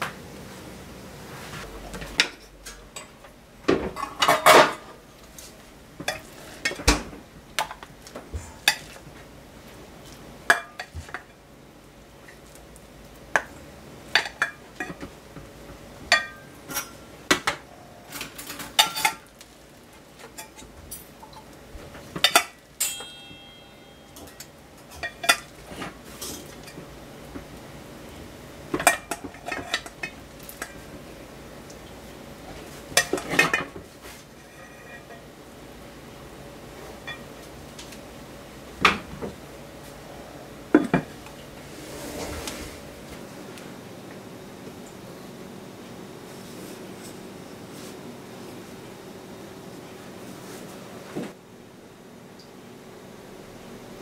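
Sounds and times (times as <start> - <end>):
cutlery and cookware clinking: 3.8 - 4.9, 16.1 - 19.4, 22.2 - 26.9, 28.7 - 30.8, 32.9 - 33.8
short ringing note: 22.9 - 24.4.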